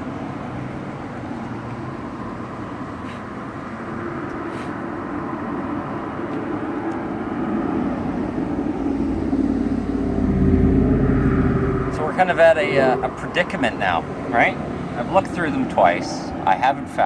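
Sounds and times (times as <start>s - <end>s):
low rumble: 7.7s - 14.0s.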